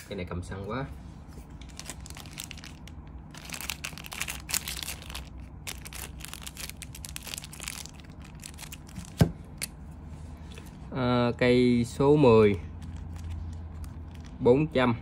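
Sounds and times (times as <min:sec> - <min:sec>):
wrapping crinkling and rustling: 0:01.4 - 0:09.7, 0:12.3 - 0:14.5.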